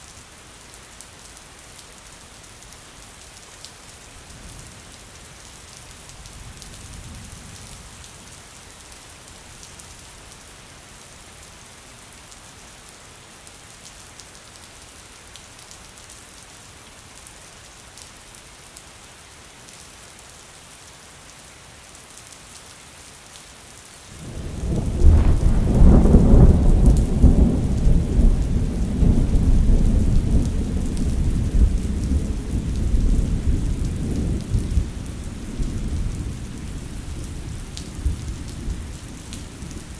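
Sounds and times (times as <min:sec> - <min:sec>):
rain falling: 0:00.0 - 0:39.9
thunder rumbling: 0:24.2 - 0:39.9.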